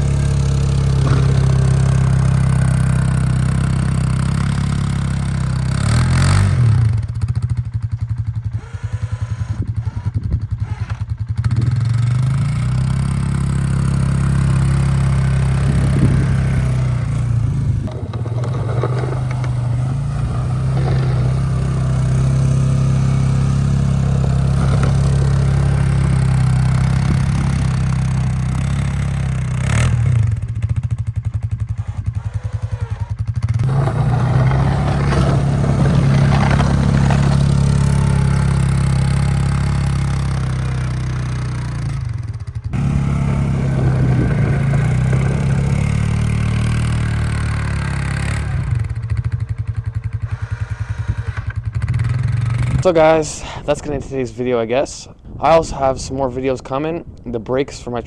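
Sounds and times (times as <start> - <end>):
atv engine running under load: 0.0 - 54.3.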